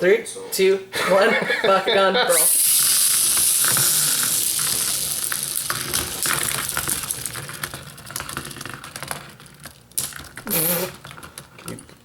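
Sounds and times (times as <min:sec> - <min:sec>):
toy balls rolling hiss: 0:02.3 - 0:11.4.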